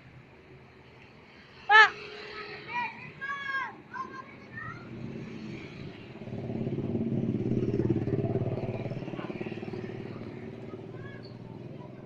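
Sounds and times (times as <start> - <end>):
vehicle engine passing by: 4.0 - 12.0.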